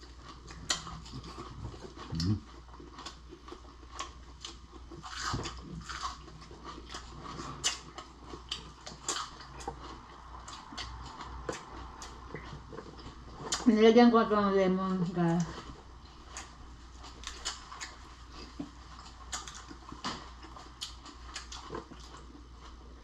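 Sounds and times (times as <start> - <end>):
person chewing seafood: 0.0 - 13.6, 15.4 - 23.0
mouth clicks and smacks: 17.1 - 22.1.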